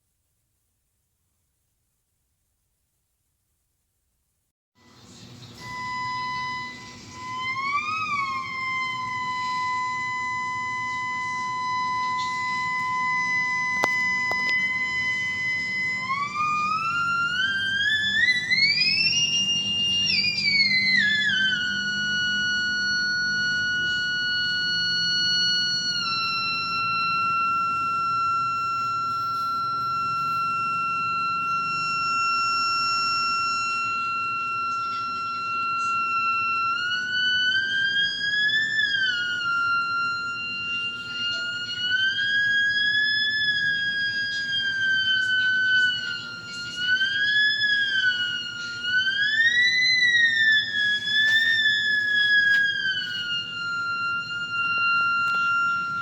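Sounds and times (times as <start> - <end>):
theremin tone: 4.8 - 56.0.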